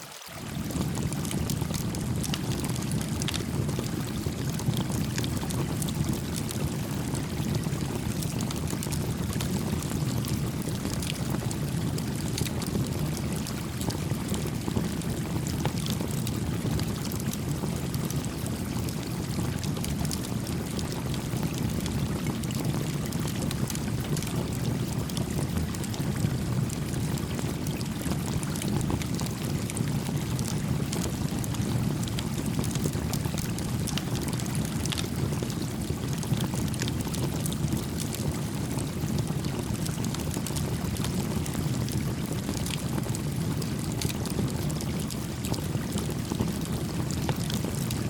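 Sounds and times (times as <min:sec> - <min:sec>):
creek flowing: 0:00.0 - 0:03.5
campfire crackling: 0:00.5 - 0:31.4, 0:32.0 - 0:47.8.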